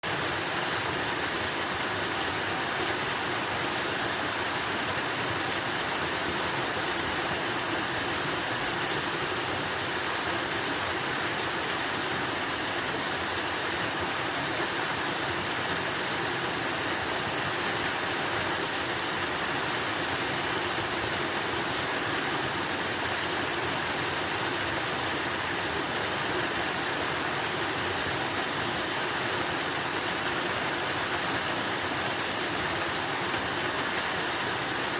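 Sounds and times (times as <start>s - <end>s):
water rushing: 0.0s - 34.9s.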